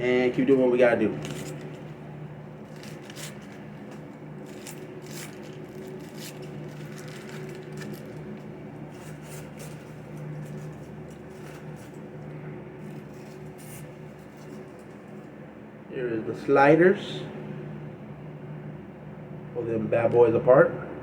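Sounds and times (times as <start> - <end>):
steady low hum: 0.0 - 21.0
takeout box clicks and rustles: 2.6 - 12.0.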